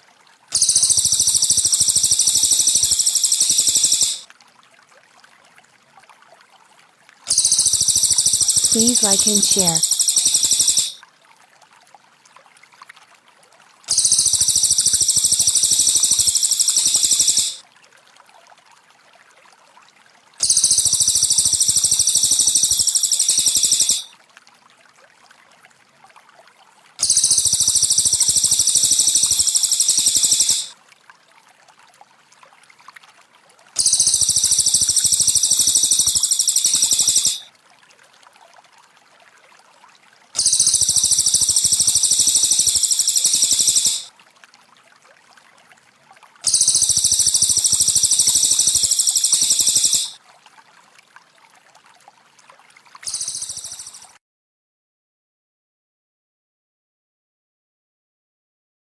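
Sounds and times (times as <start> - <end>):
faint trickling water: 0.0 - 3.5, 4.2 - 43.5, 44.1 - 54.1
high-pitched trilling bird song: 0.6 - 4.2, 7.3 - 11.0, 13.9 - 17.6, 20.4 - 24.1, 27.0 - 30.7, 33.8 - 37.4, 40.4 - 44.1, 46.5 - 50.2, 53.0 - 54.2.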